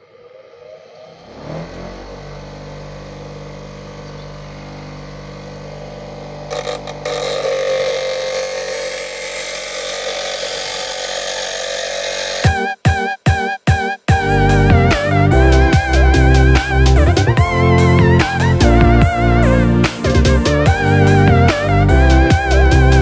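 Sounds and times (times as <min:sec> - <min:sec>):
bench grinder motor humming: 0:01.2 - 0:12.5, 0:14.2 - 0:23.0
knife blade grinding on wheel: 0:03.2 - 0:12.5.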